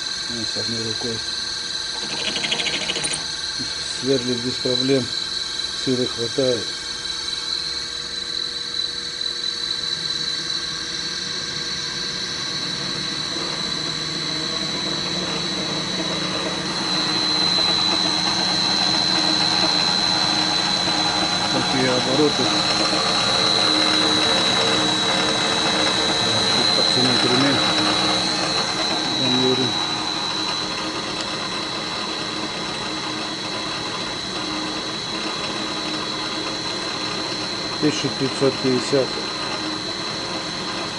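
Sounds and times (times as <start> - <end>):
electric motor whining: 1.9 - 4.3, 12.8 - 40.9.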